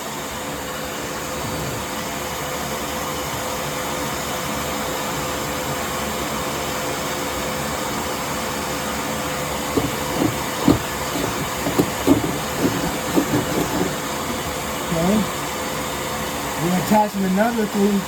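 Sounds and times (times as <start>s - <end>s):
vacuum running with whine: 9.8s - 15.6s.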